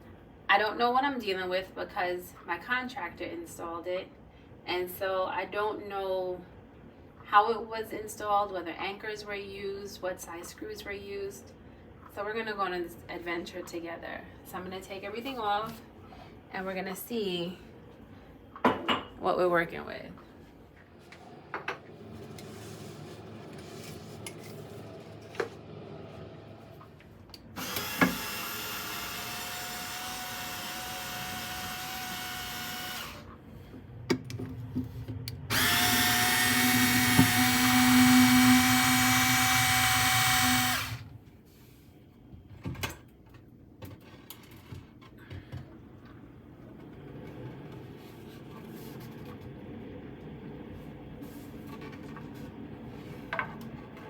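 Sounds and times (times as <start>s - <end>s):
power drill running: 27.5s - 33.3s, 35.5s - 41.1s.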